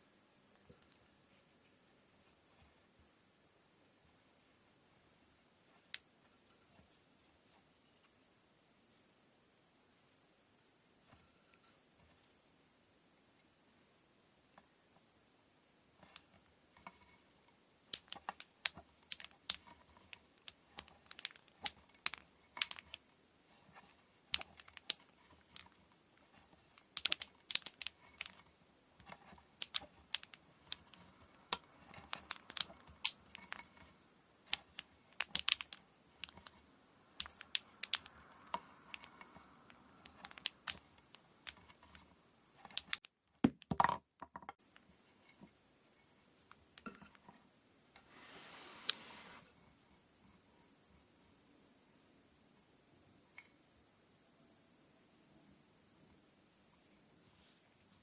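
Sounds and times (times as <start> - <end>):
short loud scrape: 48.1 - 49.5.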